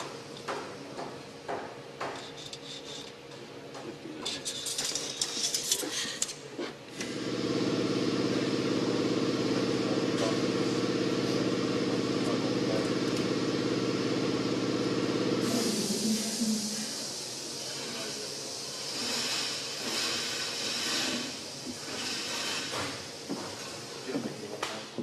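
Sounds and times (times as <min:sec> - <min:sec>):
machine hum: 0:06.9 - 0:24.3.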